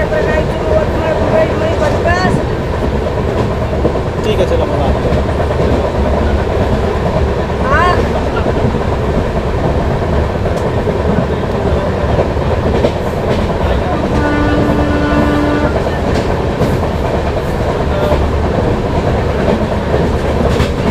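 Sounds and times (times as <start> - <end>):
train wheels clattering over rails: 0.0 - 20.9
train horn blast: 14.0 - 15.9.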